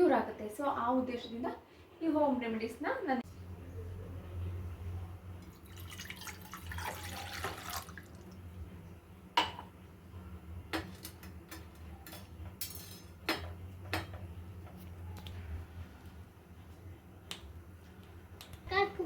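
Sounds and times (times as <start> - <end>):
water pouring into vessel: 5.4 - 8.3
kitchen utensils clinking: 10.8 - 14.1.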